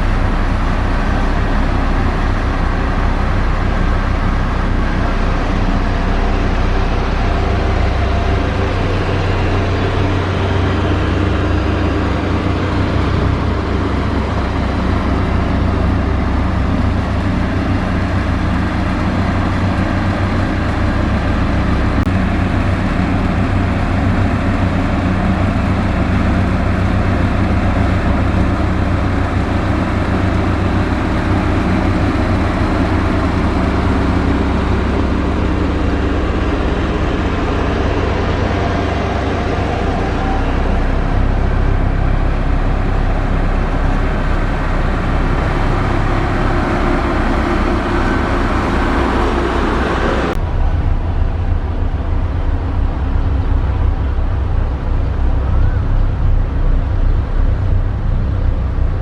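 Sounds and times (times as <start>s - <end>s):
heavy diesel engine rumbling: 0.0s - 59.0s.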